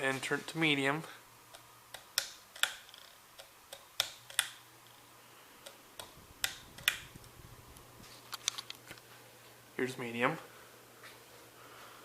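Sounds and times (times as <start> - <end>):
fan motor low hum: 0.0 - 12.0
fan switch clicks: 1.5 - 4.6, 5.6 - 9.0.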